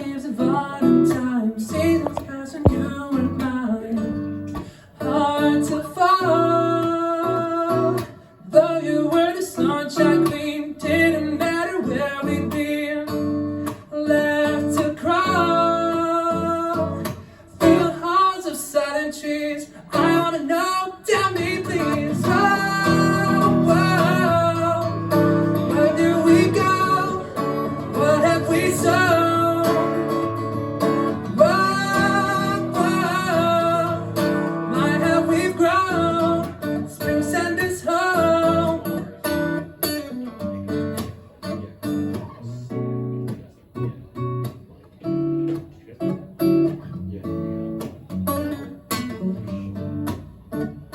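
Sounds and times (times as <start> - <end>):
person singing: 0.0 - 40.2
strummed acoustic guitar: 0.0 - 50.9.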